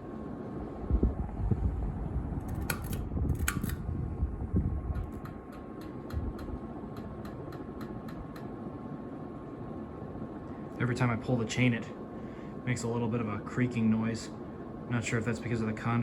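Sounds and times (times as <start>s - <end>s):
ceiling fan motor hum: 0.0s - 16.0s
pull chain clicks and creaks: 2.4s - 3.8s
fan blades knocking: 4.5s - 8.6s.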